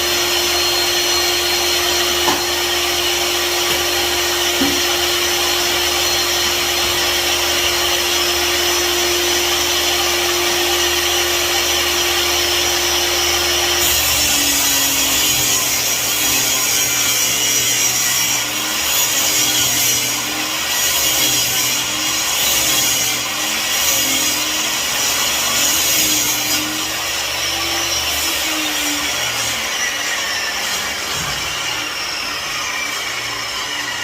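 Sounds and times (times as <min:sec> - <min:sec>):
power tool cutting wood: 0:00.0 - 0:34.0.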